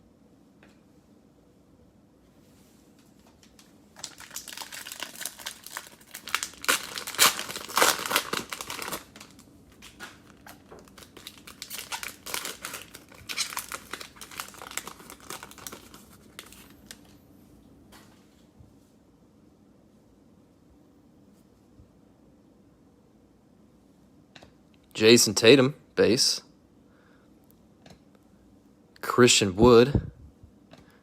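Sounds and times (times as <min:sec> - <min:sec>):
cellophane wrapper crinkling: 0:03.2 - 0:17.2.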